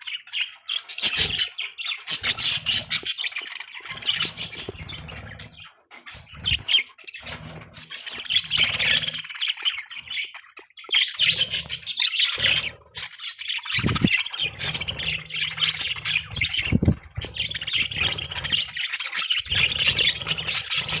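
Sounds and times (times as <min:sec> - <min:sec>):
budgies chirping and squawking: 0:00.0 - 0:21.0
low rumble: 0:13.8 - 0:18.6.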